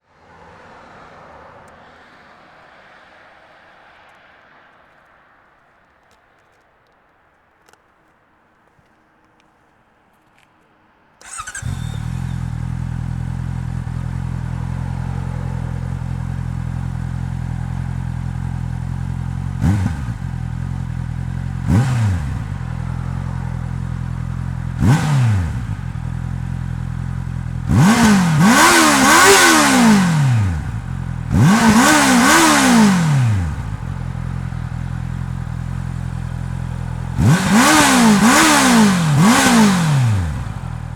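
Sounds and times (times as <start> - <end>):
motorcycle engine idling and revving: 11.2 - 40.9.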